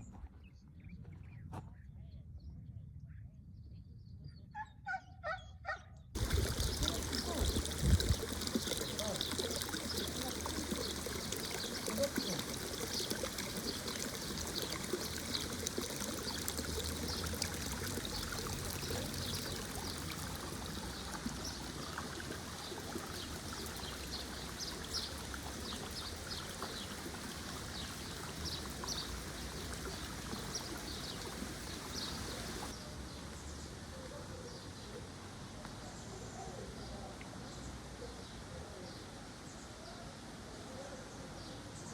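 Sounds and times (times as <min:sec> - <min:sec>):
small water splashes: 0:06.2 - 0:32.8
water trickling in a stream: 0:06.2 - 0:33.9.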